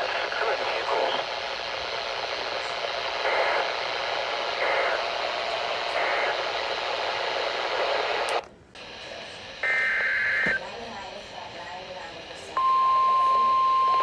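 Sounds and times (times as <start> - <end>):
weather radio static: 0.0 - 14.0
data tone bursts: 9.6 - 10.7, 12.6 - 14.0.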